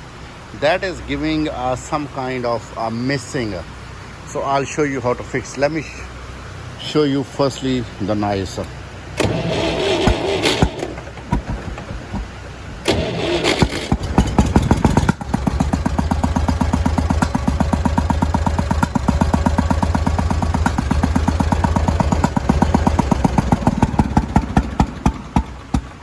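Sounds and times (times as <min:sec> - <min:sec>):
tractor engine running rough: 0:08.5 - 0:26.0.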